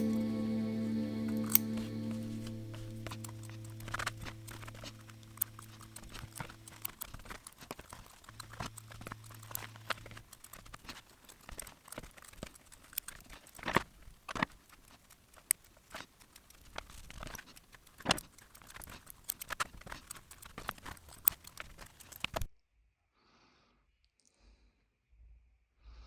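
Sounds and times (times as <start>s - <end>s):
held music tones: 0.0s - 13.1s
light taps and clicks: 1.3s - 22.5s.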